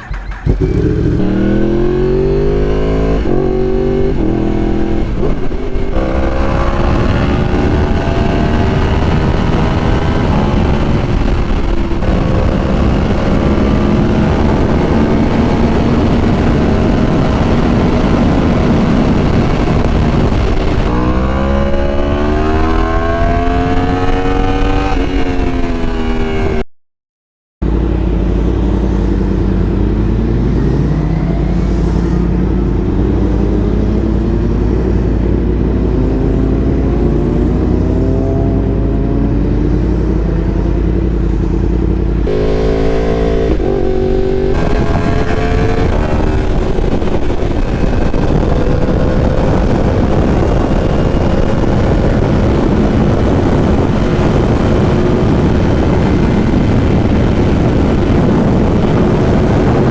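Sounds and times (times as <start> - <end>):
rushing wind noise: 0.0 - 26.6, 27.6 - 59.9
motorcycle engine accelerating: 0.0 - 26.7, 27.6 - 59.9.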